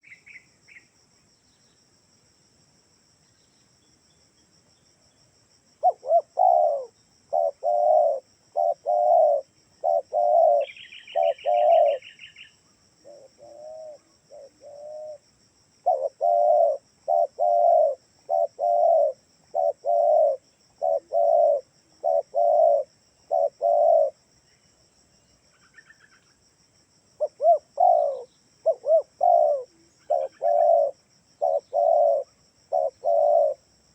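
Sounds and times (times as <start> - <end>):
dove cooing: 5.8 - 12.3, 13.0 - 15.2, 15.8 - 24.2, 27.2 - 33.7
bird trilling: 5.8 - 12.5, 15.9 - 24.1, 27.2 - 33.6.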